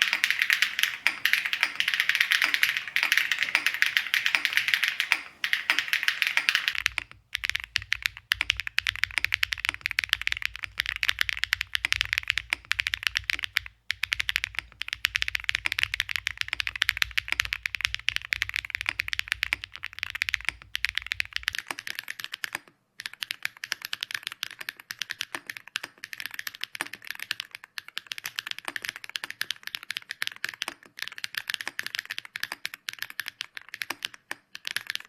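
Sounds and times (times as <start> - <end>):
mechanical keyboard typing: 0.0 - 21.6.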